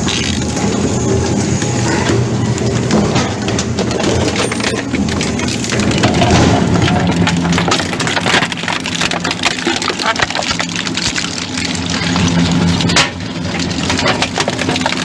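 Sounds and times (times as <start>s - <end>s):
grinding machine motor hum: 0.0s - 9.4s
hard pieces crunching: 0.0s - 15.0s.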